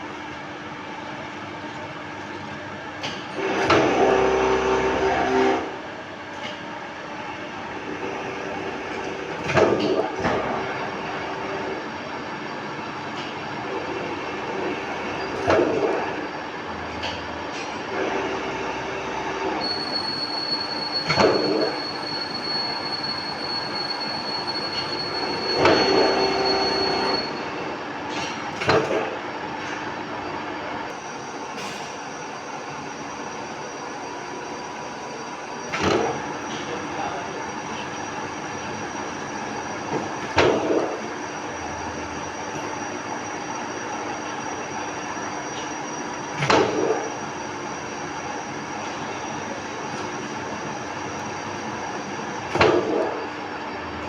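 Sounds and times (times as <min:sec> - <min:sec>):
thin high whistle: 0:19.6 - 0:27.5
squealing metal cutting: 0:19.6 - 0:27.6.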